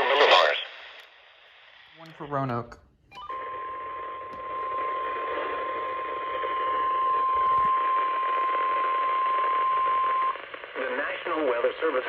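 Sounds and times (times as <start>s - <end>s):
radio static: 0.0s - 1.1s, 3.3s - 12.0s
high warning alarm tone: 3.1s - 10.3s.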